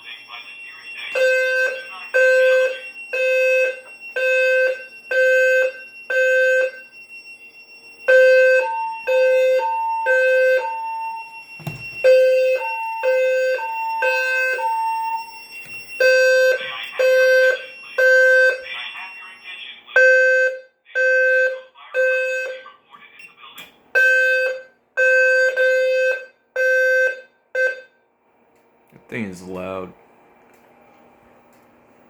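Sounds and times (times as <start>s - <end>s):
higher alarm tone: 0.0s - 22.6s
fire alarm horn pulsing: 0.0s - 23.3s, 23.9s - 28.1s.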